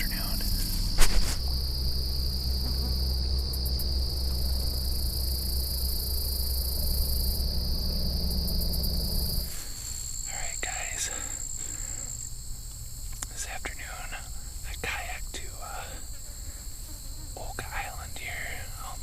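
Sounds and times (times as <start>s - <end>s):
insects trilling: 0.0s - 19.0s.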